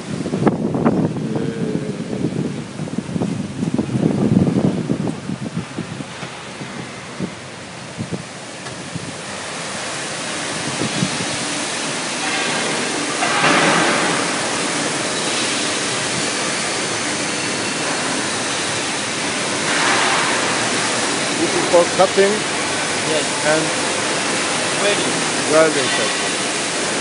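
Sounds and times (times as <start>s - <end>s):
factory machinery hiss: 6.0s - 27.0s.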